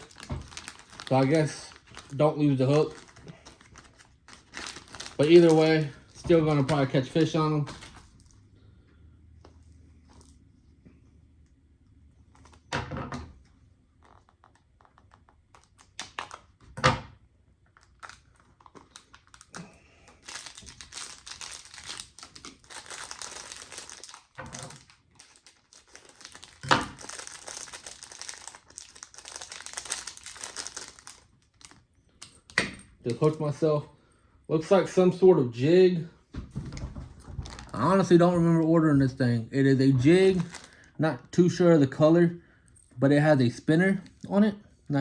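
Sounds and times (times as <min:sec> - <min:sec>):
plastic packaging crinkling: 0:00.0 - 0:08.4, 0:17.6 - 0:31.9, 0:36.8 - 0:39.0, 0:40.0 - 0:41.0.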